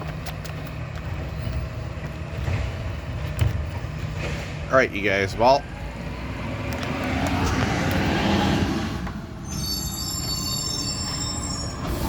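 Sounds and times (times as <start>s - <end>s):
truck engine rumbling: 0.0s - 12.0s
high squealing brakes: 8.3s - 12.0s.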